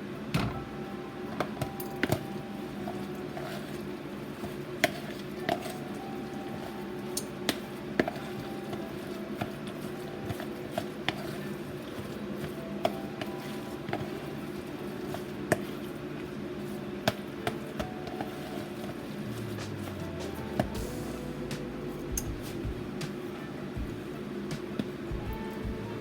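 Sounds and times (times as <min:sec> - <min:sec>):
steady low hum: 0:00.0 - 0:26.0
kitchen utensils clicking on bowl: 0:01.6 - 0:16.0.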